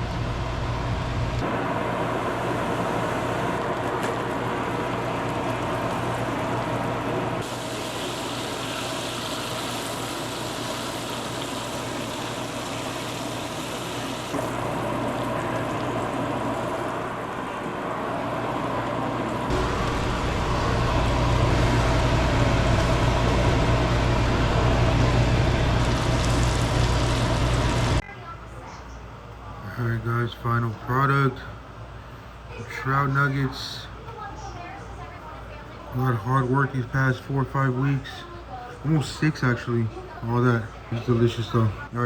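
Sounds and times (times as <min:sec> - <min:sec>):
steady low hum: 0:00.0 - 0:40.1
fish sizzling in hot oil: 0:04.9 - 0:17.1.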